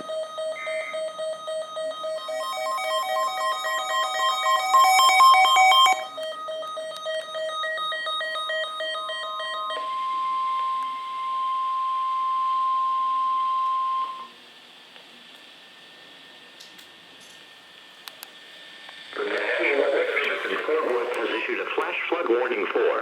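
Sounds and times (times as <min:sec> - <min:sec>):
pure steady alert tone: 0:00.0 - 0:14.3
steady buzzing tone: 0:00.0 - 0:14.4.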